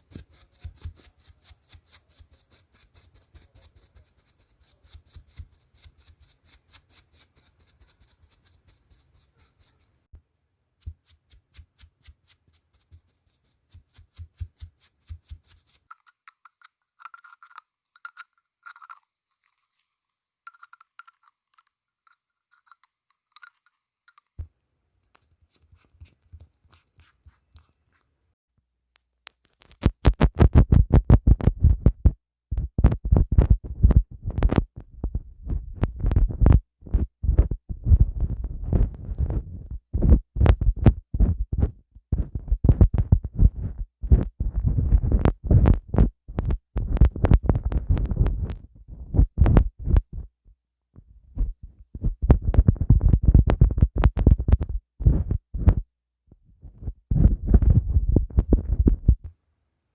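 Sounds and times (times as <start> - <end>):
makeup brush strokes: 0.0 - 10.0, 10.8 - 16.2, 25.2 - 28.1.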